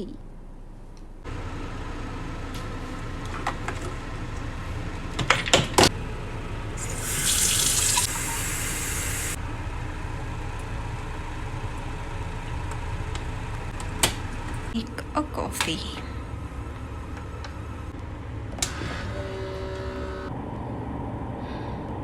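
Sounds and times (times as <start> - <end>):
steady low hum: 0.0 - 18.7
water running from a tap: 6.8 - 9.4.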